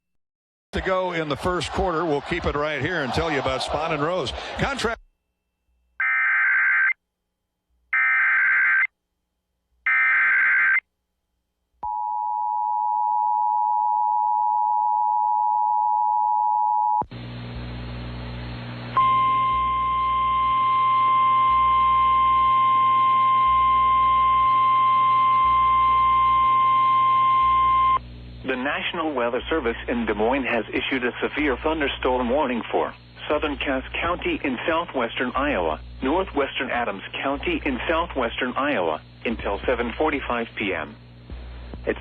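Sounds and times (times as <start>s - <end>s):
single-tone warning alarm: 6.0s - 7.0s, 8.0s - 8.9s, 9.9s - 10.8s, 19.0s - 28.0s
hissy radio relay with hum: 17.1s - 42.0s
two-tone attention signal: 19.0s - 28.0s.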